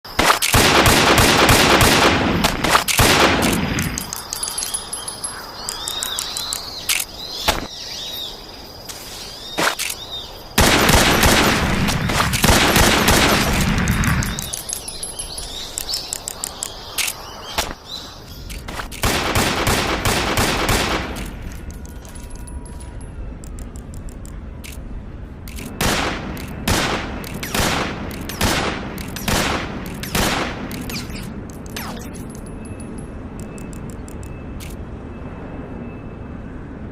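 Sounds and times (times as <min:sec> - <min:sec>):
rapid gunfire: 0:00.2 - 0:03.9, 0:10.6 - 0:14.2, 0:19.0 - 0:21.2, 0:25.8 - 0:31.1
single sharp gunshots: 0:00.2 - 0:04.0, 0:10.6 - 0:14.3, 0:25.8 - 0:32.1
birds chirping faintly: 0:04.0 - 0:10.6, 0:14.0 - 0:18.7.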